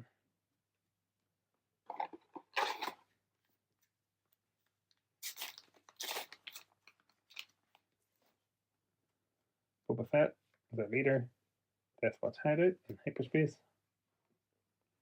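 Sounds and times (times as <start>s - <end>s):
foil wrapper crinkling and tearing: 5.2s - 7.6s.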